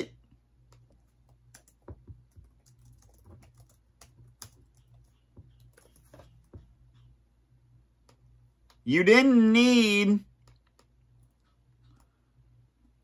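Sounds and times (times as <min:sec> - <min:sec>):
typing on a keyboard: 0:00.7 - 0:06.6.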